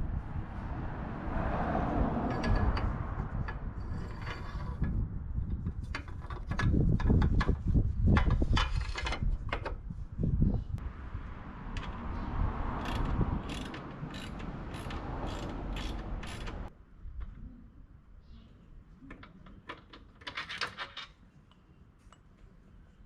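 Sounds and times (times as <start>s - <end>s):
socket ratchet clicking: 12.8s - 16.7s.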